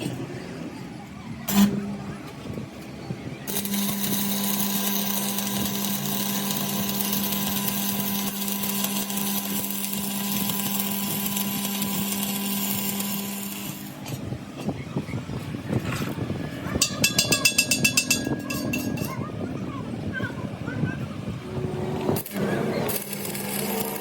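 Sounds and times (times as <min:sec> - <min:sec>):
electric power tool running: 0:03.5 - 0:14.1, 0:22.0 - 0:24.0.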